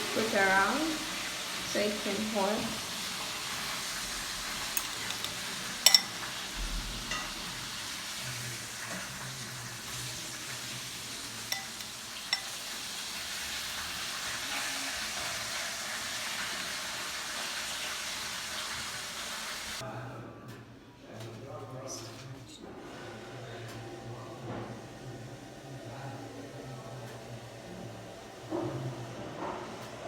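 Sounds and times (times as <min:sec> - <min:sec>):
food sizzling in hot oil: 0:00.0 - 0:19.8
utensils clicking on cookware: 0:04.6 - 0:06.4, 0:07.1 - 0:07.5, 0:11.5 - 0:12.7.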